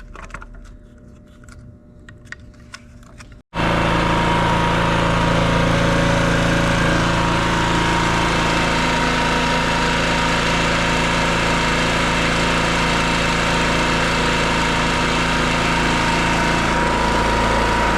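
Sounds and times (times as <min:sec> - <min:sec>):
generator engine running: 0:03.5 - 0:17.9.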